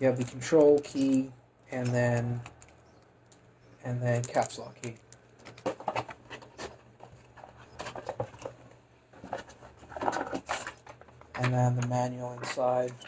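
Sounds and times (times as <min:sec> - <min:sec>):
packaging rustles and clicks: 0:04.1 - 0:13.0.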